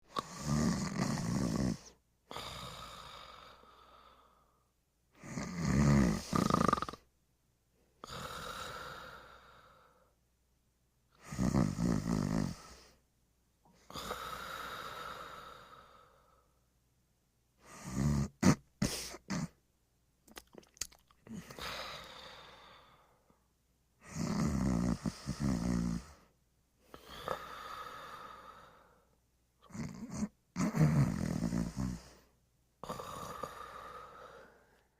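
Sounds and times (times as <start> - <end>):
short snorts: 0.1 - 3.9, 5.2 - 7.0, 11.2 - 13.0, 17.6 - 19.6, 24.0 - 26.3, 29.6 - 34.7
person snoring: 0.1 - 4.6, 5.2 - 7.1, 8.0 - 10.1, 11.2 - 13.0, 13.7 - 16.6, 17.6 - 19.6, 21.2 - 23.4, 24.0 - 26.3, 26.9 - 34.9.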